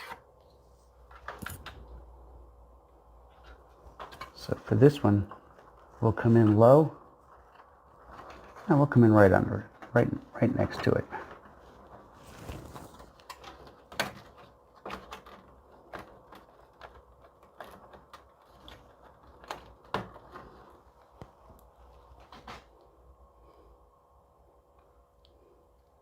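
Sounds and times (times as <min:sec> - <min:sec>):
light clicks and knocks of cables: 0:00.9 - 0:23.1
soft rustling: 0:03.1 - 0:23.7.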